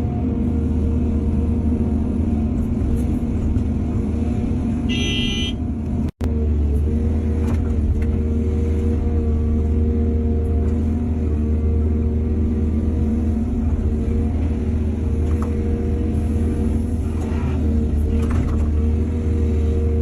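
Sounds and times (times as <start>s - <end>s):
diesel engine running under load: 0.0s - 20.0s.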